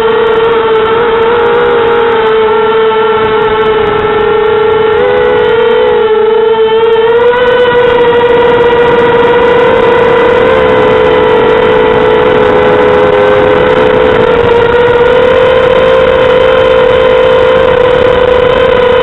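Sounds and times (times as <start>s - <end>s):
drone motors whining: 0.0s - 19.0s.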